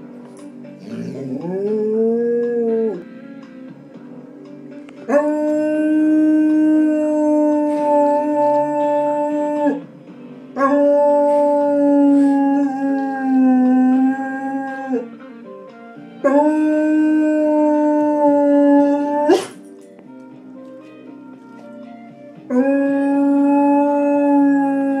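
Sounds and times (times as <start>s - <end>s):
television theme music: 0.0s - 25.0s
dog howling: 0.9s - 3.1s, 5.1s - 9.9s, 10.6s - 15.1s, 16.2s - 19.6s, 22.5s - 25.0s.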